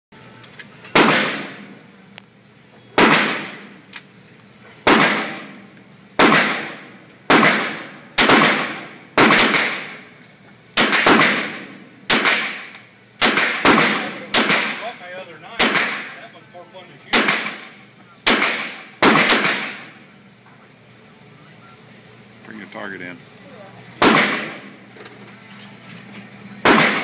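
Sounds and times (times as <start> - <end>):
rifle shots echoing: 1.0 - 1.7, 3.0 - 3.7, 4.8 - 5.6, 6.2 - 10.0, 10.8 - 14.8, 15.6 - 16.2, 17.1 - 20.0, 24.0 - 24.7, 26.6 - 27.0.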